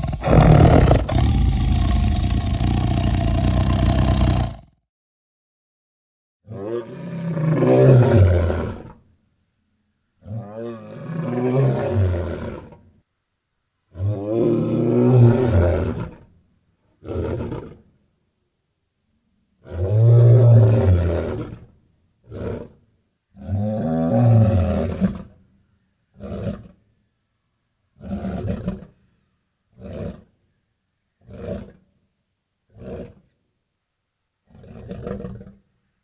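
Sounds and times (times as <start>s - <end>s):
lion grunt: 0.0s - 4.8s
lion roaring: 0.0s - 4.8s.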